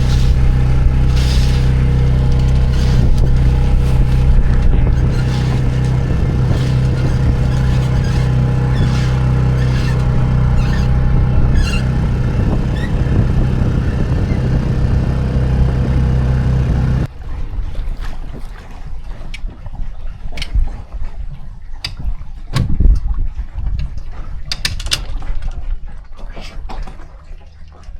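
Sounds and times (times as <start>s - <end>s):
outboard motor running: 0.0s - 17.1s.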